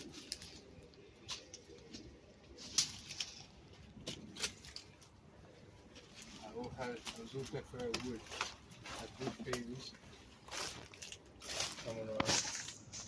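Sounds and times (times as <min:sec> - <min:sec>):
footsteps scuffing on gritty floor: 0:06.0 - 0:13.0.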